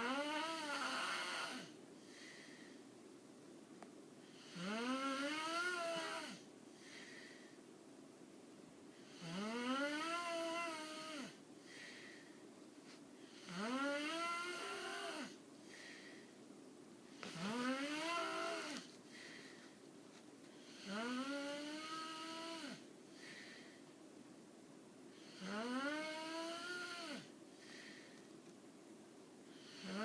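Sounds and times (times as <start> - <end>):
person snoring: 0.0 - 1.7, 4.4 - 6.4, 9.1 - 11.4, 13.3 - 15.4, 17.2 - 19.0, 20.6 - 22.9, 25.2 - 27.3, 29.6 - 30.0.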